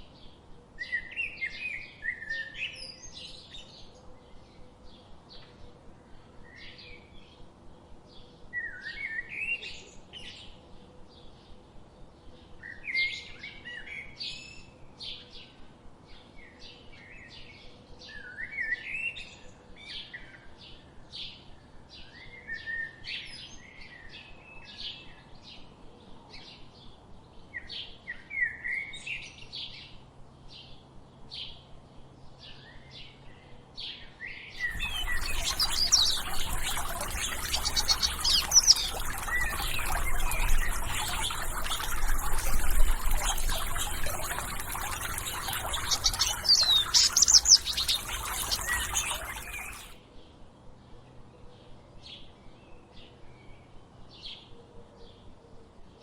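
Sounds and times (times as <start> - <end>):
small birds chirping: 34.6 - 49.9.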